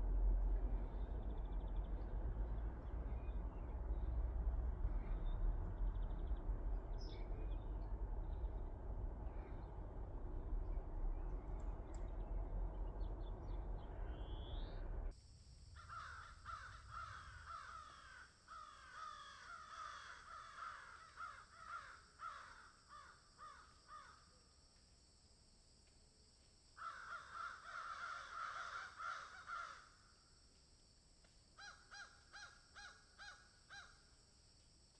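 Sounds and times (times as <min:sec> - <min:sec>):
low rumbling noise: 0:00.0 - 0:18.0
crows cawing: 0:15.8 - 0:24.2, 0:26.8 - 0:30.1, 0:31.6 - 0:34.0.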